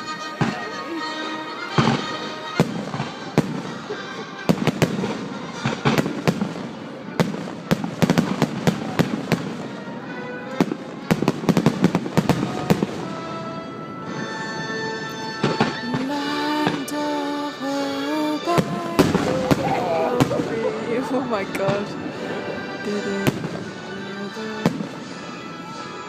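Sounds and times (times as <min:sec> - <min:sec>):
fireworks bangs and crackles: 0:00.3 - 0:00.8, 0:01.7 - 0:14.3, 0:15.4 - 0:16.8, 0:18.4 - 0:25.4.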